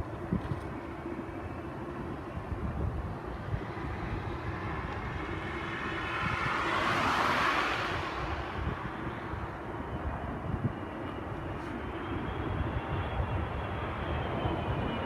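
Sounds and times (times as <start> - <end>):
jet airliner engine roar: 0.0 - 15.0
wind buffeting microphone: 0.0 - 15.0.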